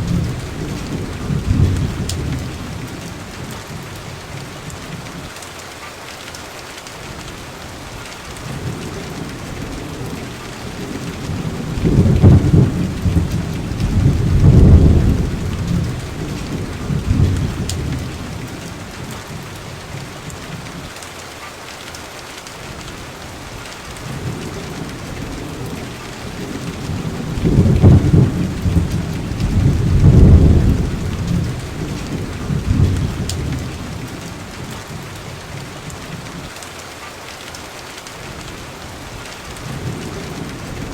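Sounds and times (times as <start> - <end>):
thunder rolling: 0.0 - 3.6, 8.4 - 19.4, 24.0 - 35.0
rain falling: 0.0 - 40.9.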